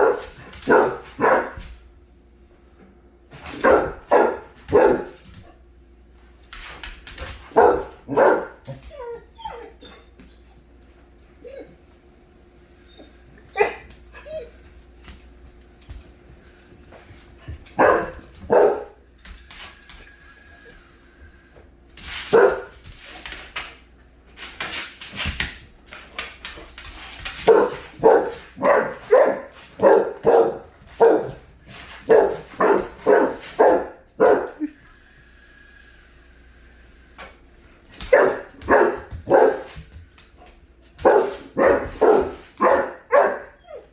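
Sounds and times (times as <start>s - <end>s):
dog barking: 0.0s - 1.6s, 3.5s - 5.2s, 7.5s - 8.8s, 13.6s - 13.9s, 17.8s - 19.0s, 22.3s - 22.7s, 27.5s - 31.4s, 32.1s - 34.7s, 38.1s - 39.8s, 41.0s - 43.8s.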